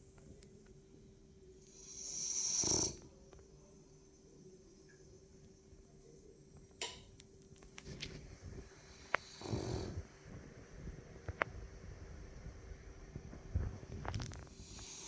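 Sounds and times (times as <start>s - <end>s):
dog snoring: 1.7s - 3.1s, 8.8s - 10.1s, 14.4s - 15.0s.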